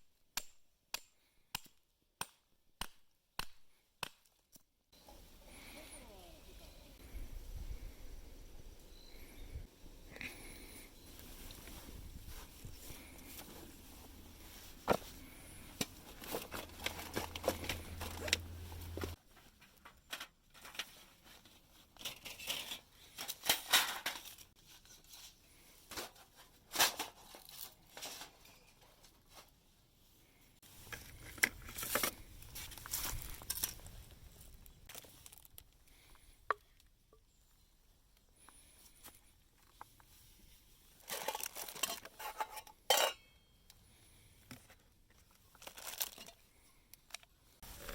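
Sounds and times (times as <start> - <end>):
rustling and crinkling: 10.2 - 37.0, 38.1 - 43.1, 44.0 - 47.9.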